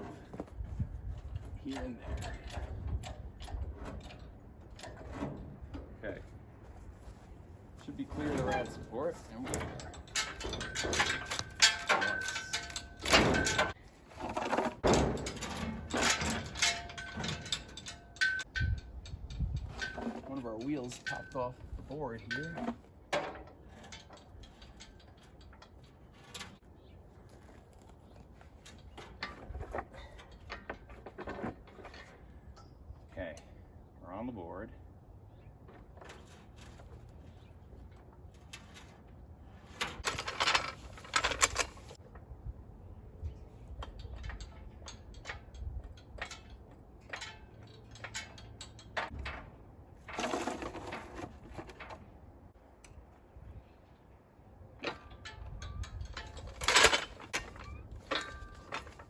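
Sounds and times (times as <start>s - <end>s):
engine hoist clicks and knocks: 9.4s - 26.6s, 54.8s - 59.0s
hoist wheels scraping: 50.1s - 51.8s.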